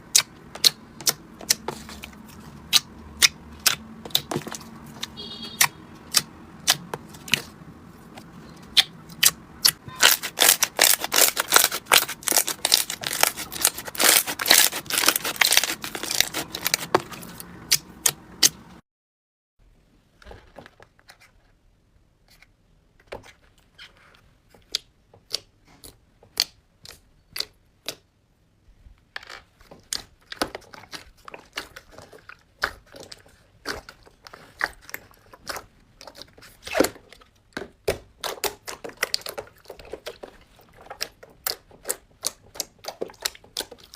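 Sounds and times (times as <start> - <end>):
slime clicking and popping: 0.0 - 1.7, 2.7 - 7.5, 8.7 - 18.6.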